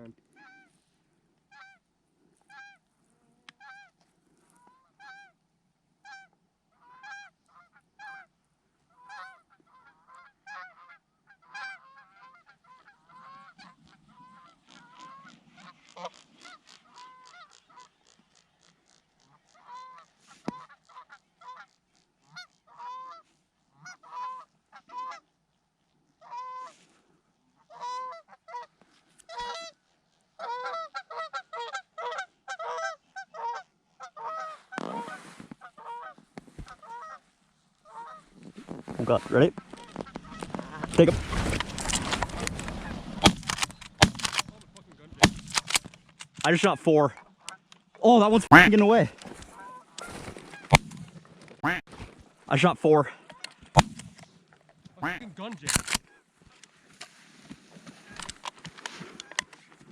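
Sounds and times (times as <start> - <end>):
geese honking: 6.0 - 8.3, 9.0 - 23.2, 23.8 - 25.2, 30.4 - 36.2, 36.8 - 37.2, 37.9 - 38.2, 38.8 - 54.3, 55.0 - 55.3.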